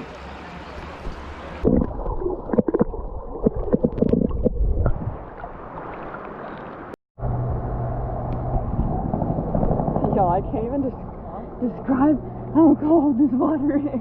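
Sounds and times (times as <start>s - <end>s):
creek water sloshing and gurgling: 0.0s - 6.9s
low hum: 7.2s - 14.0s.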